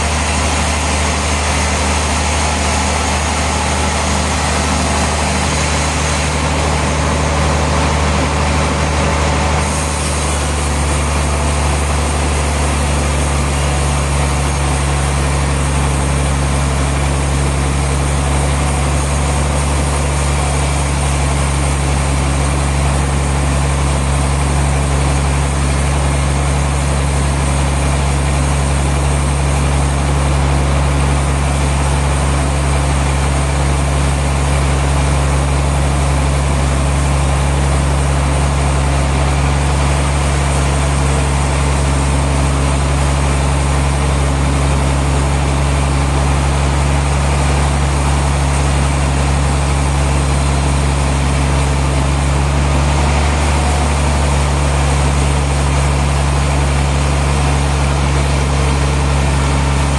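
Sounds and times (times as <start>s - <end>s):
sawmill machinery humming: 0.0s - 59.9s.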